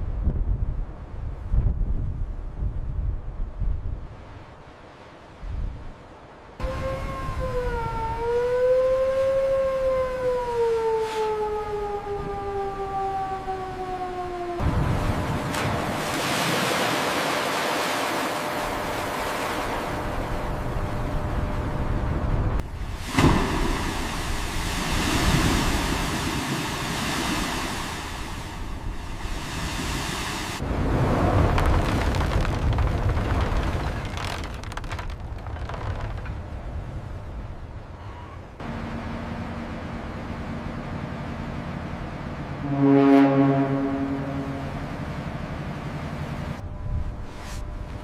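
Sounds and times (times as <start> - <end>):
heavy rush of water: 15.2 - 19.8
deep loud rumble with crackling: 30.6 - 42.6.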